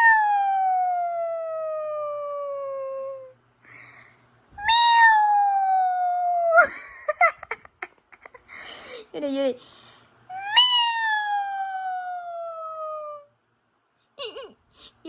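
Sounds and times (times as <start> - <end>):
cat meowing: 10.3 - 13.3.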